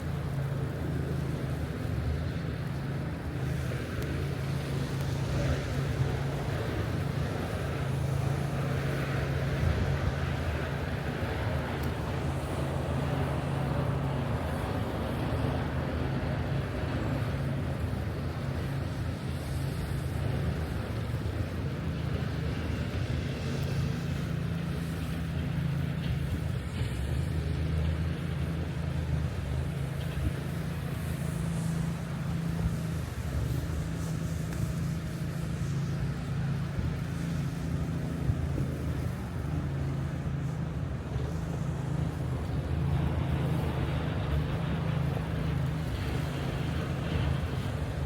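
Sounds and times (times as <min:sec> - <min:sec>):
low rumble of traffic: 0:00.0 - 0:48.0.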